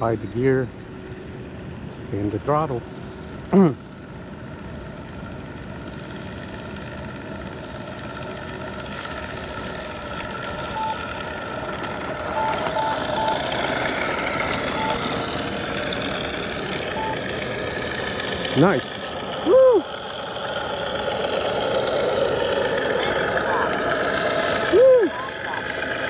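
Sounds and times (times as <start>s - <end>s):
model airplane engine running: 0.0s - 26.0s
short high beeps: 12.3s - 13.5s, 14.7s - 15.0s, 16.9s - 17.2s.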